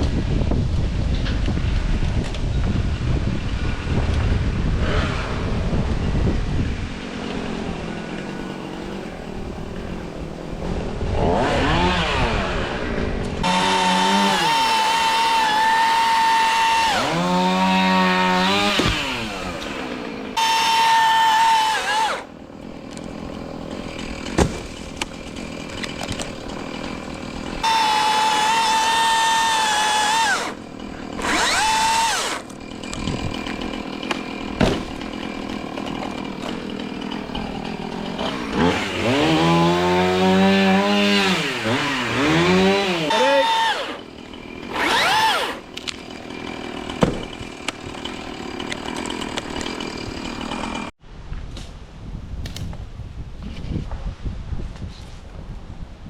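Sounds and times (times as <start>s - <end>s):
electric chainsaw whine: 1.0s - 51.0s
sharp knocks: 24.3s - 25.1s, 34.6s - 34.9s, 47.0s - 47.3s.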